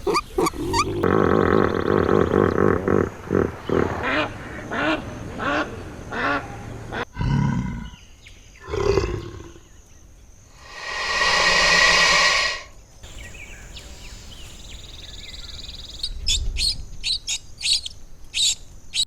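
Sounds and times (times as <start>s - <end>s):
low rough animal sound: 10.6s - 12.7s
animal calling: 10.6s - 13.9s.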